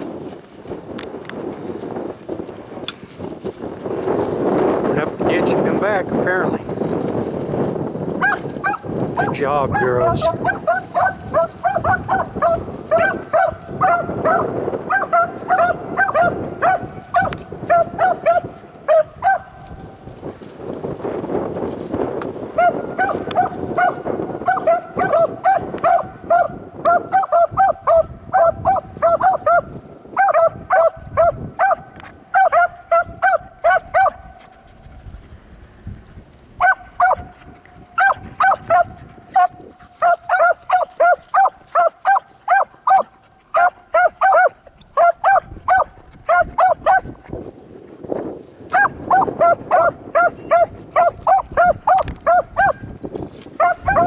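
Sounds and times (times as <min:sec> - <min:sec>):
hounds barking in short yelps: 0:08.2 - 0:19.8, 0:22.6 - 0:34.6, 0:36.6 - 0:47.2, 0:48.7 - 0:52.9, 0:53.6 - 0:54.0.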